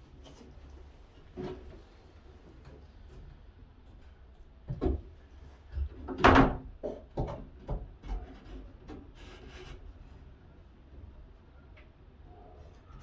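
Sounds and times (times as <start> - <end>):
wooden knocks and bumps: 4.7 - 5.2, 5.8 - 8.5.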